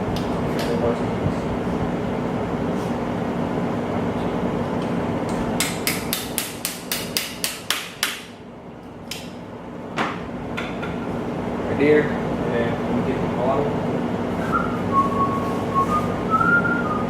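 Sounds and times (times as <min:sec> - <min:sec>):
steady background hum: 0:00.0 - 0:17.0
hammer tapping: 0:05.6 - 0:08.3.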